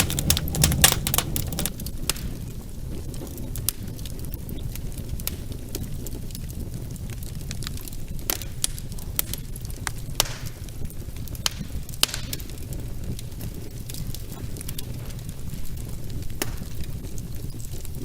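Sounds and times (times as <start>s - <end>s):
fire crackling and popping: 0.0s - 1.7s.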